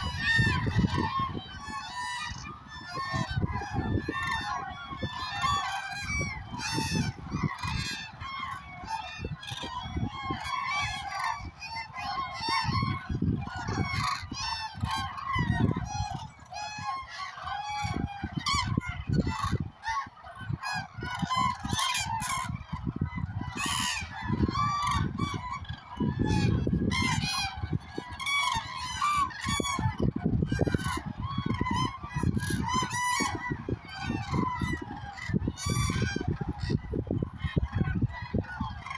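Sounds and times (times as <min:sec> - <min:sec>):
cranes trumpeting calls: 0:00.0 - 0:38.9.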